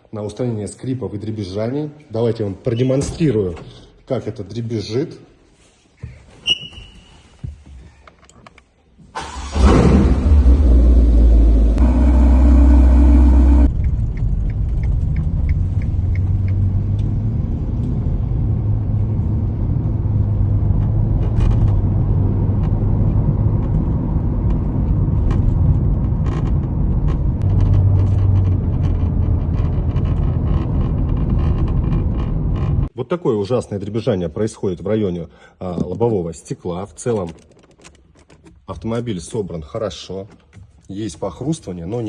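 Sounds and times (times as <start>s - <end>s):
low engine and road drone: 9.2s - 32.9s.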